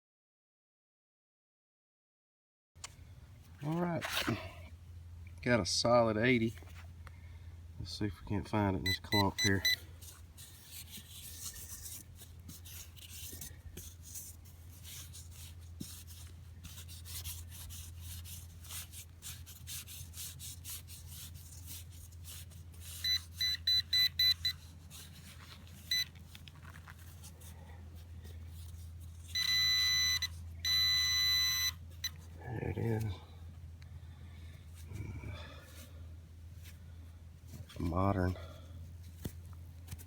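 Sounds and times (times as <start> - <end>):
low steady hum: 2.8 - 40.0
metal detector beeping: 8.6 - 9.9, 22.9 - 24.7, 25.8 - 26.2, 29.2 - 32.2
soil being dug and scraped: 9.1 - 29.4.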